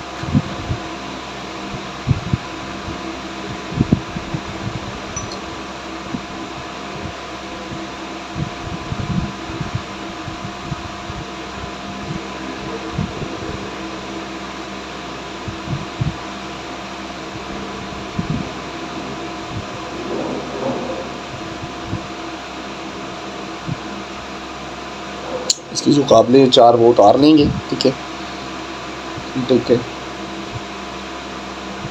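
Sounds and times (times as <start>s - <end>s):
fan hum: 0.0s - 31.9s
knocks of parts and tools: 5.2s - 5.4s.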